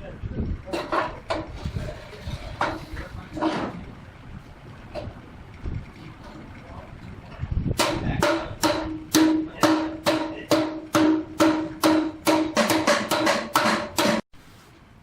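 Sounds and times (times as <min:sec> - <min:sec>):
hammer striking steel: 0:07.8 - 0:14.3.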